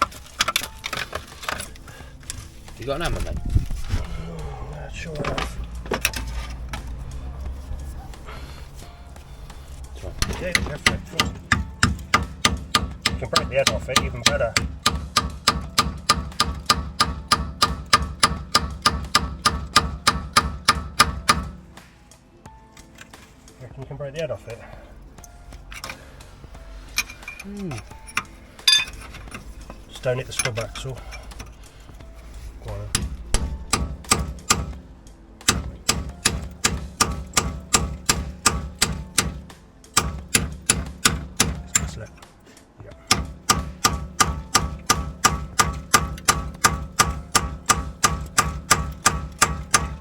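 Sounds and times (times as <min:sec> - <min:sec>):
hammer striking metal bolt: 0:10.1 - 0:21.6, 0:27.0 - 0:31.5, 0:32.7 - 0:42.3, 0:43.0 - 0:50.0
hammer blows on metal: 0:32.6 - 0:42.0, 0:42.9 - 0:50.0.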